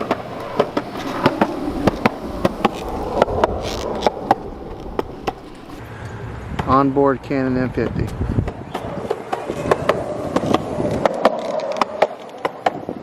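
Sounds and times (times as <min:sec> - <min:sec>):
skateboard clacks: 0:00.0 - 0:03.3, 0:07.8 - 0:13.0
skateboard wheels rumbling on pavement: 0:00.0 - 0:05.8, 0:07.8 - 0:13.0.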